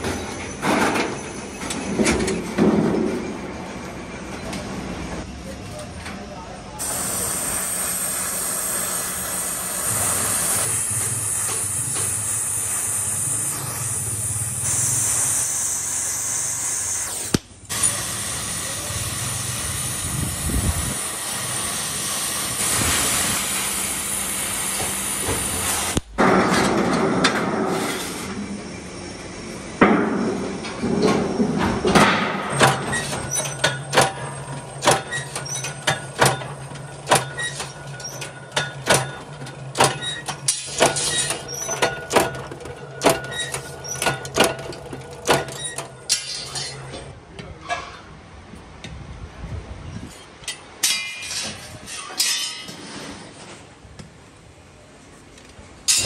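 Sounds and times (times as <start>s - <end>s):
sharp metal knocks hammering: 31.9s - 46.8s, 50.5s - 52.7s.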